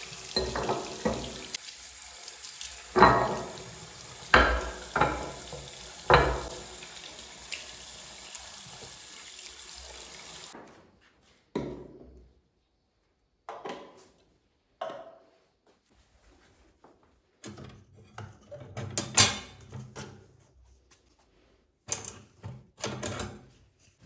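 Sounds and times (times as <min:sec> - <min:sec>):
tap water running into sink: 0:00.0 - 0:10.6
knocks of things in sink: 0:04.3 - 0:05.5, 0:06.1 - 0:06.6.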